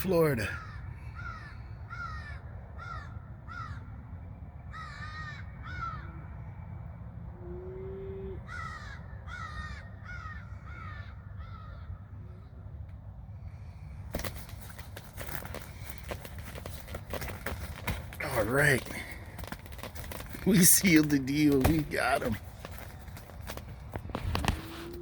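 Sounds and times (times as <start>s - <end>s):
crows cawing: 0.3s - 4.0s, 4.7s - 6.4s, 8.0s - 12.1s.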